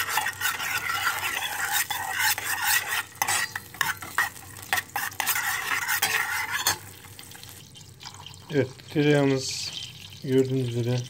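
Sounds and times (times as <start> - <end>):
spoon scraping a pot: 0.0 - 8.5
butter sizzling: 0.0 - 11.0.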